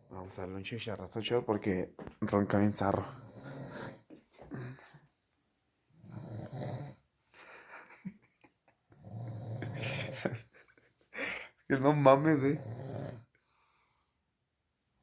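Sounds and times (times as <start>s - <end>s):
man snoring: 3.0s - 4.0s, 6.0s - 7.0s, 8.9s - 10.5s, 12.1s - 13.3s.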